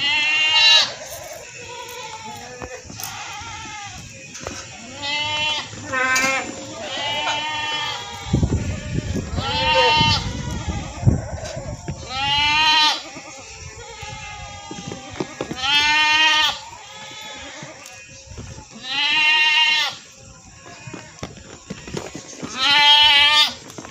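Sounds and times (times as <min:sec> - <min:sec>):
goat bleating: 0:00.0 - 0:20.0, 0:20.6 - 0:23.6.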